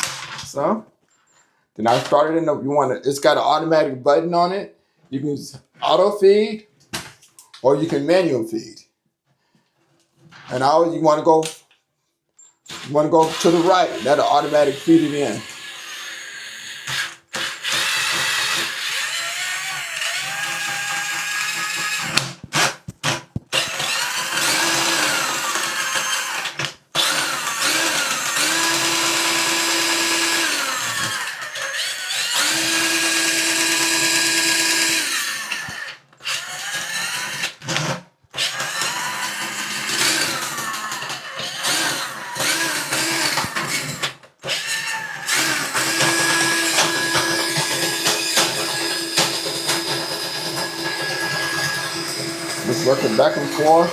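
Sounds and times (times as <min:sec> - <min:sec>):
drain auger motor whine: 0:23.5 - 0:37.2, 0:38.4 - 0:53.9.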